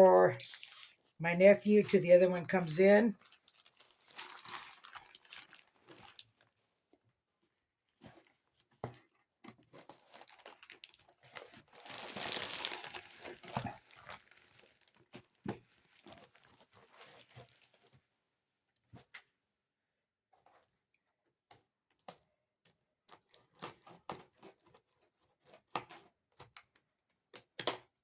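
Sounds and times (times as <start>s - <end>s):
packaging crinkling: 2.0s - 6.5s, 9.8s - 17.8s
packaging tearing: 3.2s - 6.4s, 9.8s - 15.4s.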